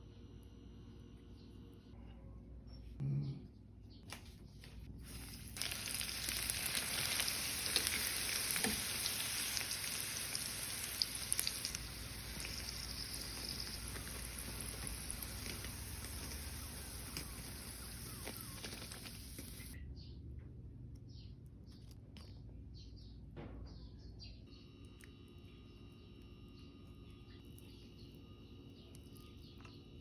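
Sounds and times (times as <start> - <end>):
food sizzling in hot oil: 5.1 - 19.8.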